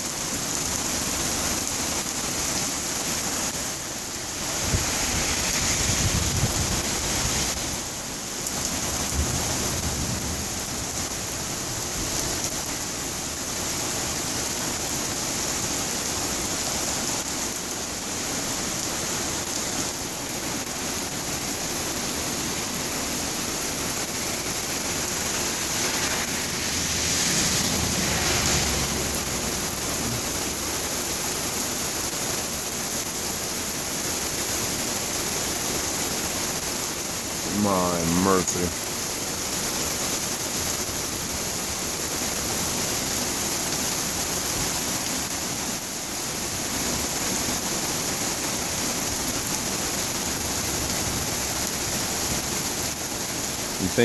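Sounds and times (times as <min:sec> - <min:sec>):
heavy rain pouring: 0:00.0 - 0:54.0
low rumbles: 0:23.8 - 0:32.2.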